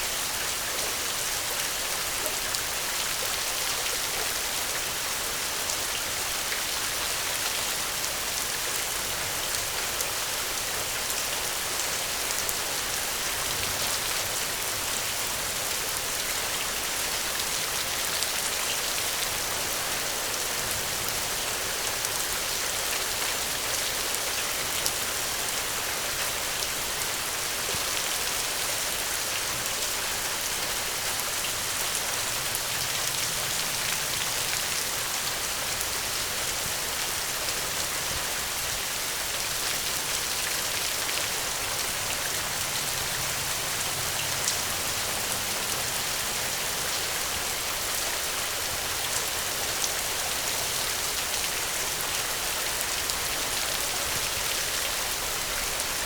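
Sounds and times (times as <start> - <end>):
heavy rain: 0.0 - 56.0.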